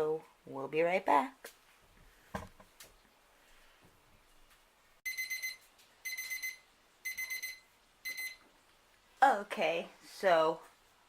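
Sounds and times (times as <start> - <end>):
kitchen timer beeping: 5.0 - 8.4.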